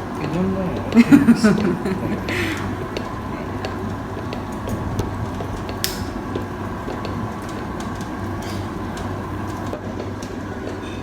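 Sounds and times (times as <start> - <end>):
tableware clicks and taps: 8.4 - 9.1.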